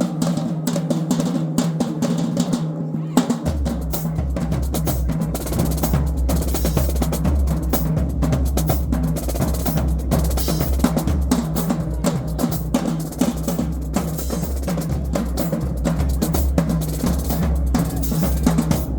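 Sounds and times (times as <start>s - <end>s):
snare drum strokes and rolls: 0.0s - 18.9s
bass drum hits: 17.7s - 18.9s.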